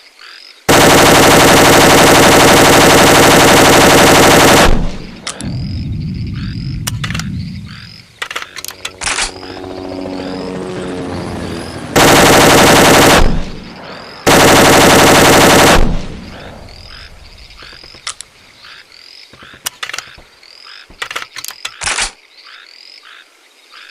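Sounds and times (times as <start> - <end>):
frogs croaking: 0.0 - 0.7, 3.7 - 23.9
machine gun automatic fire: 0.7 - 5.4, 11.9 - 16.4.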